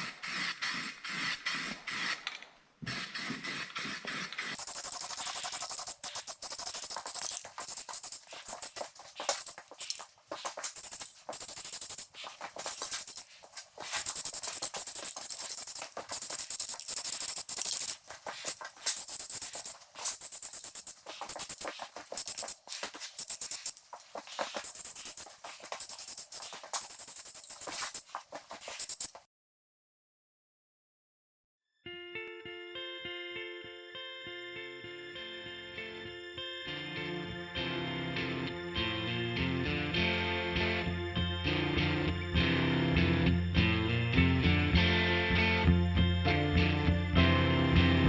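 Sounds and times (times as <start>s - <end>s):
aerosol spray can hissing: 3.2s - 29.2s.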